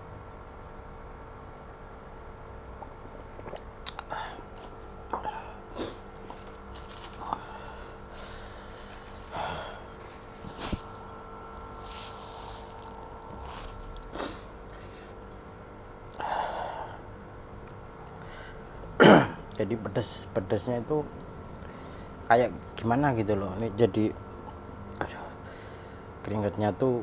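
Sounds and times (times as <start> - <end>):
steady low hum: 0.0 - 27.0
man sniffing: 5.2 - 6.1, 7.2 - 11.0, 13.4 - 15.2
short hissing breaths: 7.2 - 9.9, 14.1 - 15.2.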